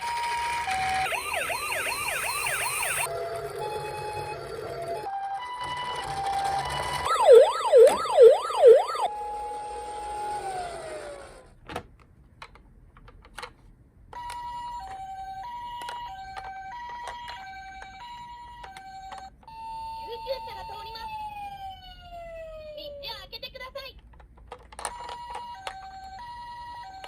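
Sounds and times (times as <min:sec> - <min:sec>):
toy electronic sirens: 0:00.0 - 0:11.4, 0:14.2 - 0:23.2, 0:24.8 - 0:27.0
two-tone hi-lo siren: 0:00.1 - 0:10.6, 0:19.5 - 0:22.6.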